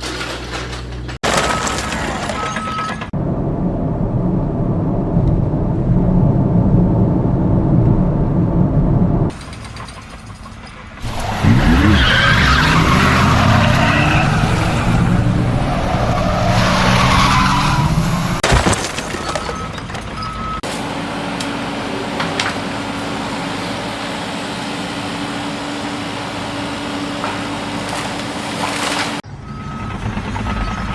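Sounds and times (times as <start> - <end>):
car engine droning: 1.0 - 10.0, 10.8 - 30.9
car engine revving: 11.0 - 18.4
tyres squealing: 11.0 - 20.6.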